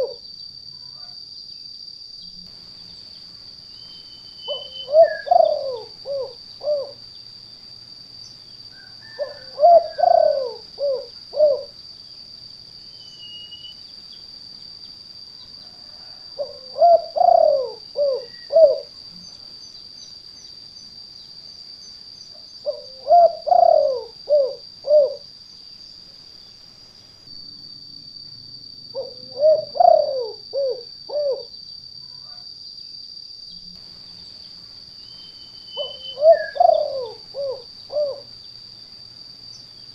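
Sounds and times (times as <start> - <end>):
dove cooing: 0.0 - 0.2, 4.4 - 7.0, 8.8 - 11.8, 15.8 - 18.9, 22.6 - 25.3, 28.9 - 31.5, 35.7 - 38.3.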